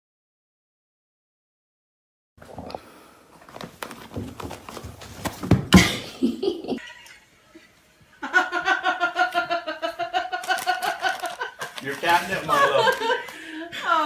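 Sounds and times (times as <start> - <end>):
knocks and rustling: 3.5 - 6.1
person laughing: 5.8 - 7.2, 8.3 - 14.0.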